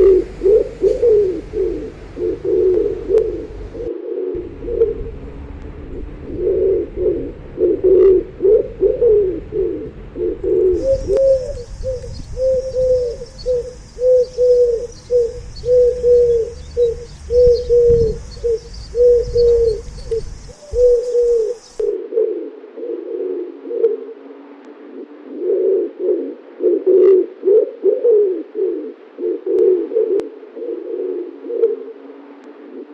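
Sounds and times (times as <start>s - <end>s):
pigeons cooing: 0.0s - 32.9s.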